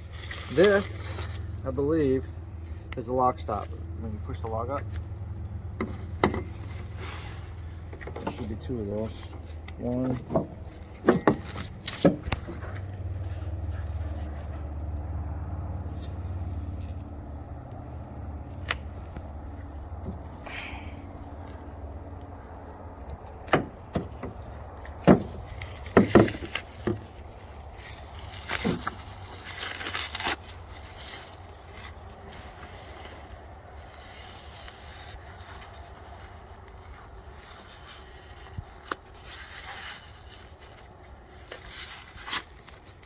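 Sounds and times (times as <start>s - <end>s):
packaging scraping and rustling: 0.0s - 1.8s, 23.1s - 43.0s.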